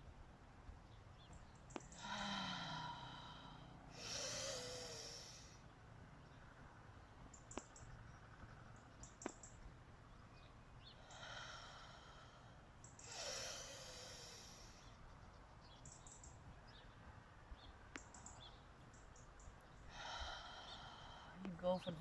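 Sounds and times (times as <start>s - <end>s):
person breathing: 1.9s - 5.7s, 11.0s - 15.0s, 19.9s - 21.5s
sharp clicks: 7.4s - 7.9s, 9.0s - 9.6s, 17.9s - 18.4s.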